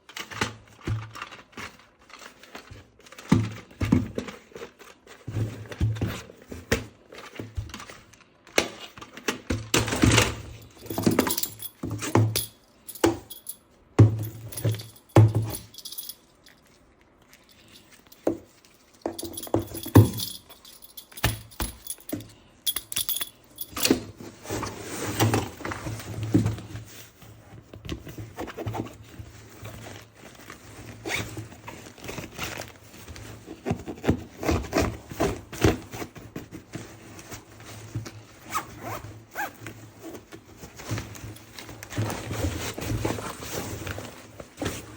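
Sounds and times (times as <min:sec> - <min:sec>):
plastic toy parts clicking and rattling: 0:18.9 - 0:24.0.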